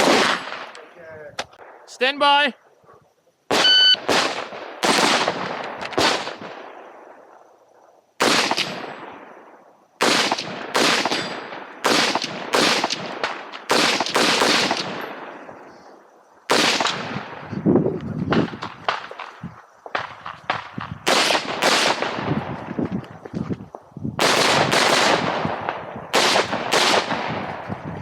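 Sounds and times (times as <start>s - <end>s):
rifle shots with echo: 0.0s - 0.7s, 3.5s - 7.0s, 8.2s - 9.3s, 10.0s - 15.6s, 16.5s - 17.4s, 18.3s - 22.4s, 24.2s - 27.6s.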